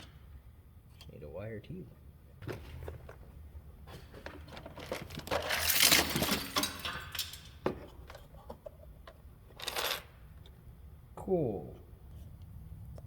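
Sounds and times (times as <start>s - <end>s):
rustling and crinkling of parts: 2.4s - 10.5s.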